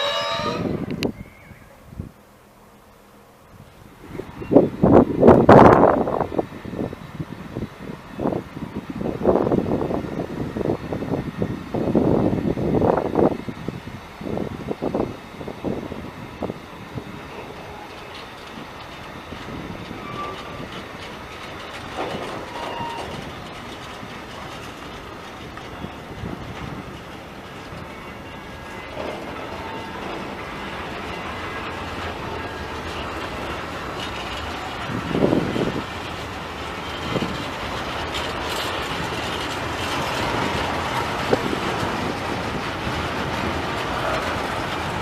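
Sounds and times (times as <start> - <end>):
train wheel squeals: 0.0 - 1.8, 4.2 - 5.0, 16.3 - 45.0
train wheels rolling on rails: 0.0 - 45.0.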